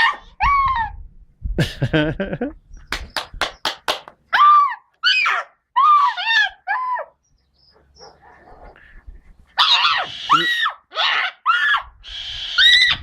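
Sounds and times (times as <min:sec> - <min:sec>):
shrill screams: 0:04.3 - 0:07.1, 0:09.6 - 0:13.0.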